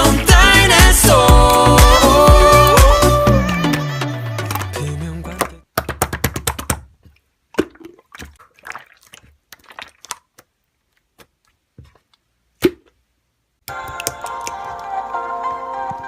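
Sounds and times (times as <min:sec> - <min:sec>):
taps and knocks: 0:05.4 - 0:06.9.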